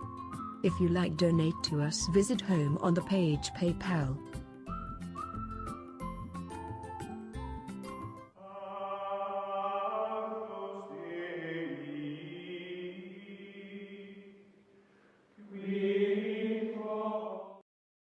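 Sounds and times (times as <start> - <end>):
held chant-like vocal drone: 8.4 - 14.5, 15.4 - 17.6.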